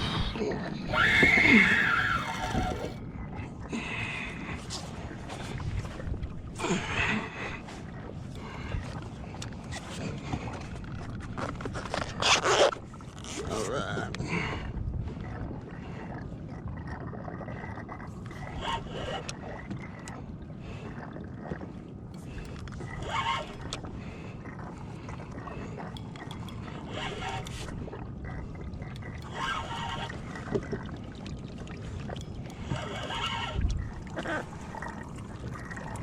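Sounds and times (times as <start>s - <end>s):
wind on microphone: 0.0s - 3.6s, 32.1s - 36.0s
water sloshing against kayak hull: 0.0s - 36.0s.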